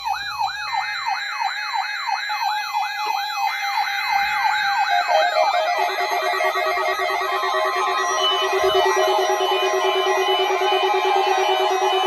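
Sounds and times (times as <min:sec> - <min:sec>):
electronic siren yelping: 0:03.6 - 0:12.0
second siren sweep: 0:04.1 - 0:12.0.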